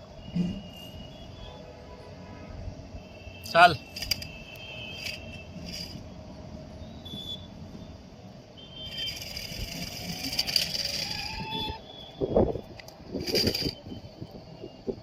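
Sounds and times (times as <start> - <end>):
toy car tyre noise: 3.9 - 6.0, 8.8 - 11.9, 12.6 - 14.0.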